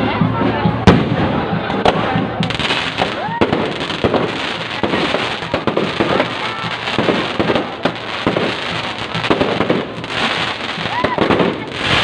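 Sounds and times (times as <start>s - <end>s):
fireworks bangs and crackling: 0.6s - 12.0s
fireworks whistling: 2.5s - 12.0s.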